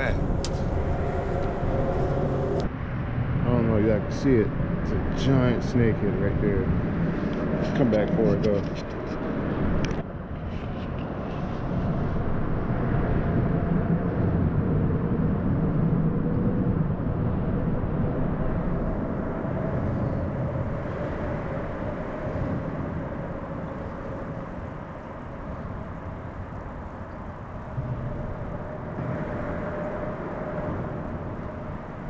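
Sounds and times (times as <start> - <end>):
low engine rumble: 0.0 - 32.0.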